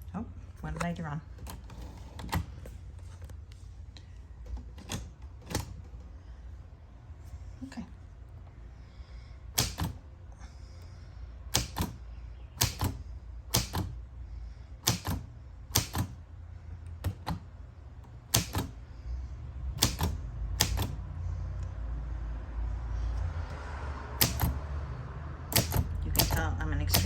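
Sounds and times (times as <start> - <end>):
typewriter key clacks: 11.5 - 12.0, 12.6 - 13.9, 14.8 - 16.2, 18.3 - 18.7, 19.8 - 21.0, 24.2 - 24.6, 25.5 - 27.0.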